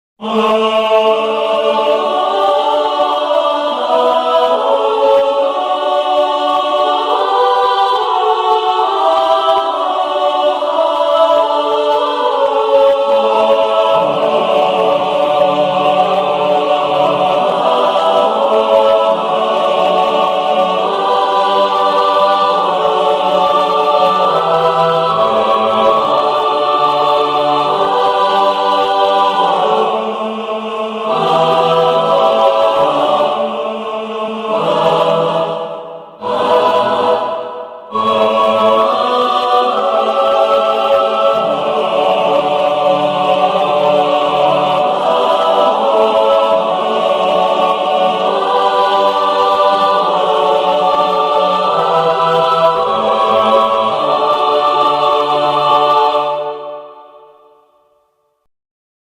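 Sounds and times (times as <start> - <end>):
wordless choir singing: 0.2 - 58.2.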